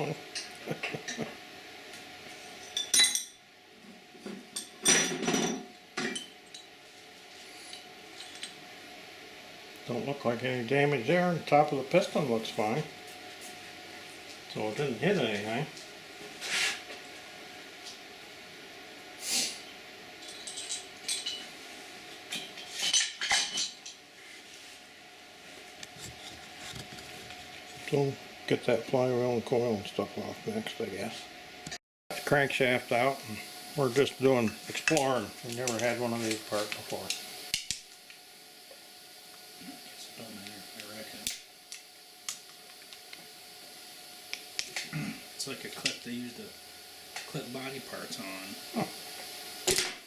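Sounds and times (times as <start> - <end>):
metal engine parts clinking: 20.2 - 21.5.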